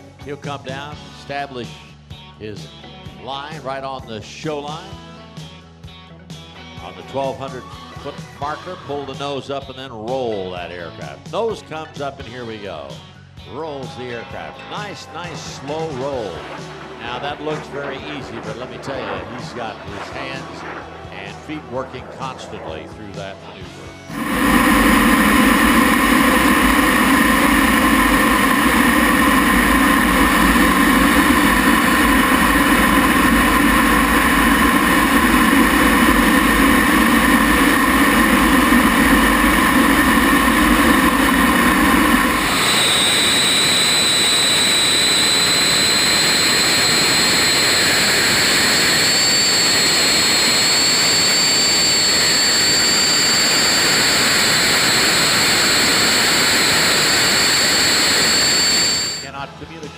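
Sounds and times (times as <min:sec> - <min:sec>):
turbojet engine running: 0:14.8 - 0:23.2, 0:24.1 - 0:59.3
high whine rising in pitch: 0:24.1 - 0:59.3.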